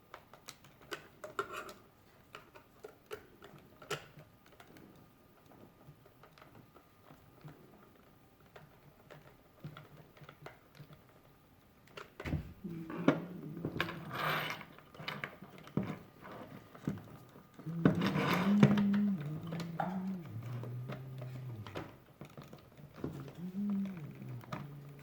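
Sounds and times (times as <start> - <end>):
low pitched stepping hum: 17.7 - 22.0.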